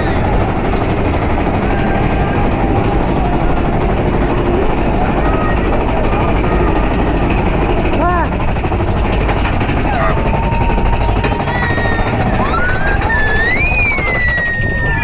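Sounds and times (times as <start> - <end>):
roller coaster rumbling on track: 0.0 - 15.0
faint riders' voices: 1.4 - 8.5.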